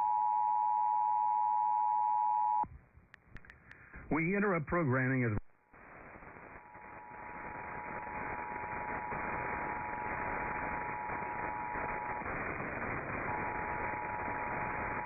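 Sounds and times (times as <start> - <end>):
radio static: 4.0 - 15.0.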